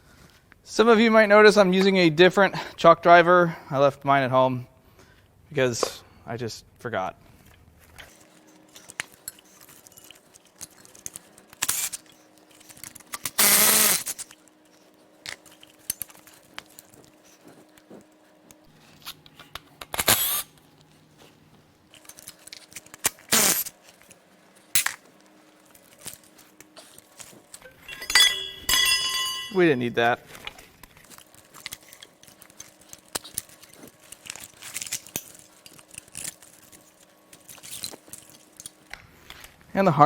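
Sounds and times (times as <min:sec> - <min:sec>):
metal tools clinking and knocking: 0:08.1 - 0:14.4, 0:24.7 - 0:25.0, 0:27.5 - 0:29.7.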